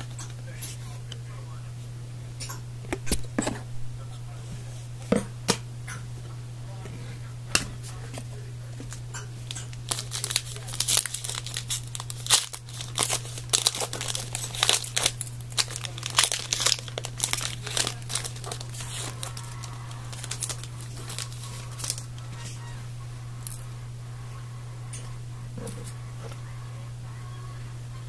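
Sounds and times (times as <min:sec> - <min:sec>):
foil wrapper crinkling: 0:08.8 - 0:22.7.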